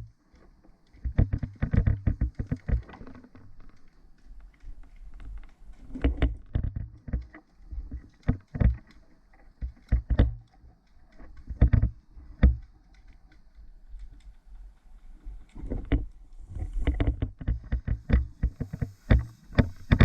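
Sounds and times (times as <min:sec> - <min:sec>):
faint rustling: 0:00.0 - 0:20.0
thumps and knocks: 0:01.0 - 0:03.2, 0:16.6 - 0:20.0.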